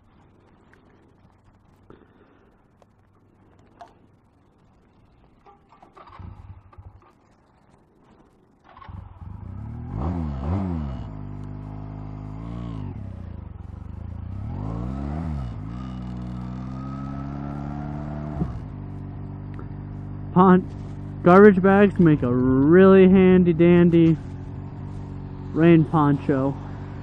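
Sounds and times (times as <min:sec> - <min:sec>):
motorcycle engine revving: 0:05.4 - 0:07.3, 0:08.6 - 0:27.0.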